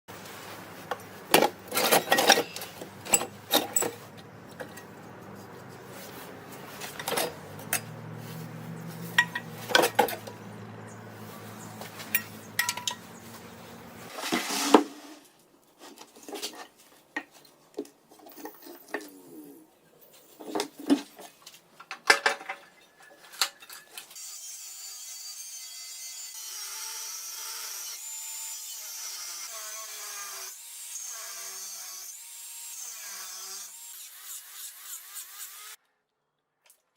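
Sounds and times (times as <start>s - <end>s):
metal parts clanking: 0.9s - 5.5s, 6.7s - 8.1s, 9.0s - 10.5s, 11.7s - 13.7s.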